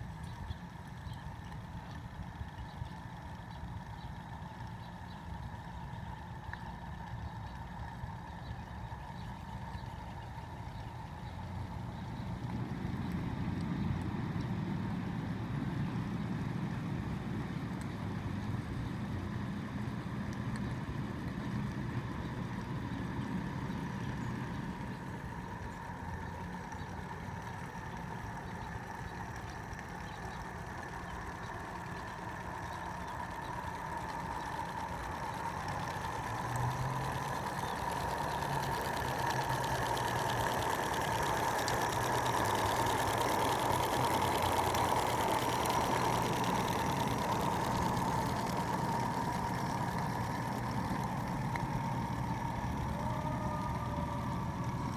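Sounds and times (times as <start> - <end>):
steam locomotive running: 20.6 - 54.9.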